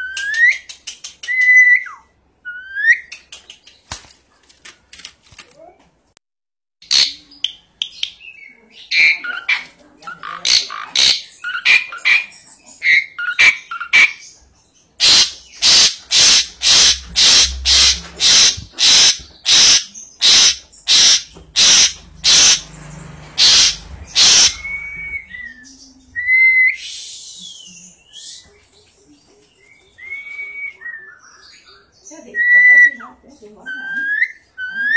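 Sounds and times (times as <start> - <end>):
loud harsh bird calls: 8.2 - 27.1
starling chattering: 15.0 - 26.2.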